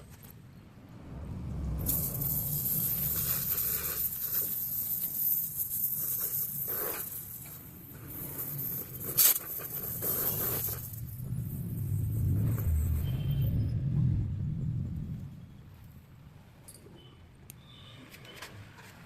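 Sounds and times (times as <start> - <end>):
welding torch flame hissing: 1.7 - 13.6.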